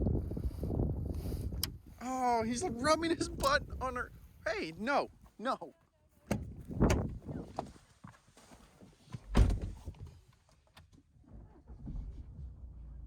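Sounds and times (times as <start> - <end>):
heavy thuds against car body: 9.3 - 9.9.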